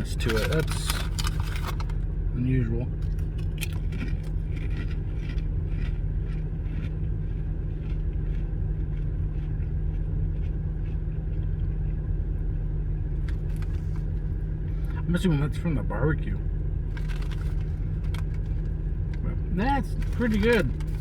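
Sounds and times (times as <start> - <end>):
potato chips crunching: 0.0 - 2.0, 3.0 - 12.0, 16.9 - 21.0
steady low rumble: 0.0 - 21.0.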